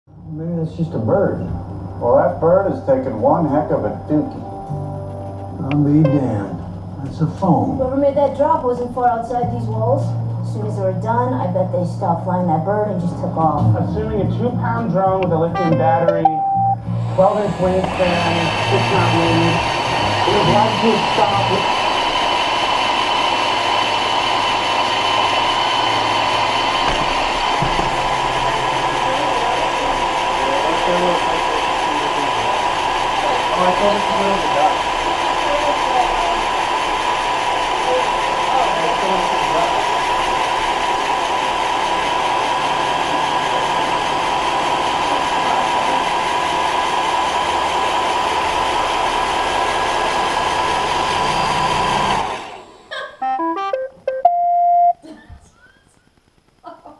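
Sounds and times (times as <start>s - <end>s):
high whine: 0.1s - 56.6s
robot vacuum whirring: 16.8s - 53.2s.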